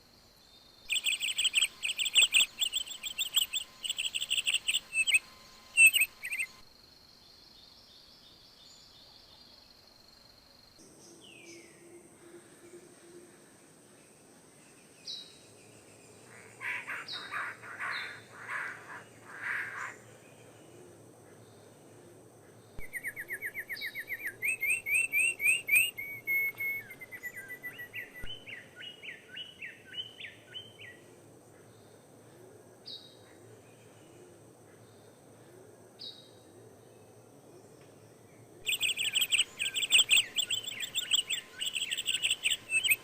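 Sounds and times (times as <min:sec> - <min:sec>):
bird chirps and trill: 0:00.9 - 0:06.6, 0:16.6 - 0:20.0, 0:22.8 - 0:28.3, 0:38.6 - 0:43.0
birds calling harshly: 0:00.9 - 0:06.6, 0:16.3 - 0:20.0, 0:38.6 - 0:43.0.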